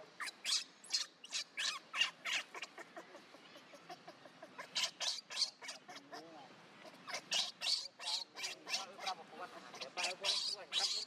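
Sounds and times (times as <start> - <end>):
monkey squeaking: 0.2 - 2.8, 4.6 - 6.0, 6.8 - 11.0.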